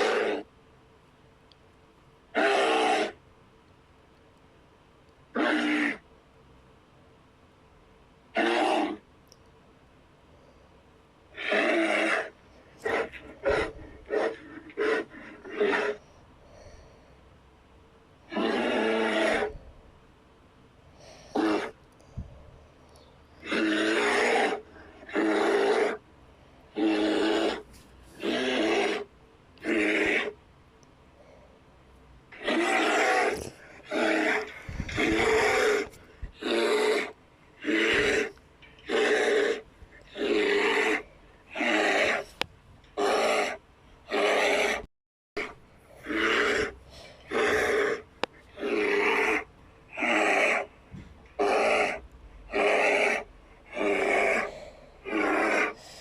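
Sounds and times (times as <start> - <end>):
monster roar sound effects: 0.0 - 0.5, 2.4 - 3.2, 8.4 - 9.0, 11.4 - 16.0, 18.3 - 19.5, 23.4 - 26.0, 26.7 - 30.4, 32.3 - 42.3, 43.0 - 50.7, 51.4 - 55.8.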